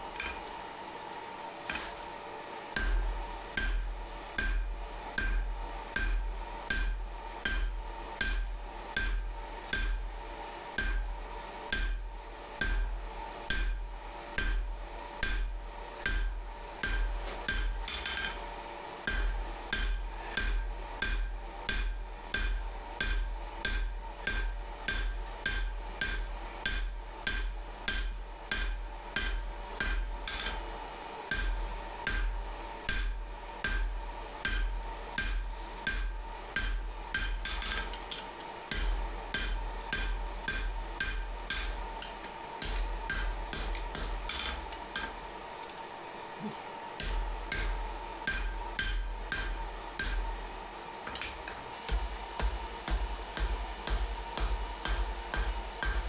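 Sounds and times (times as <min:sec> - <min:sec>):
steady hum: 0:00.0 - 0:56.0
hammer striking steel on anvil: 0:00.1 - 0:00.5, 0:02.7 - 0:30.7, 0:31.3 - 0:45.3, 0:47.0 - 0:56.0.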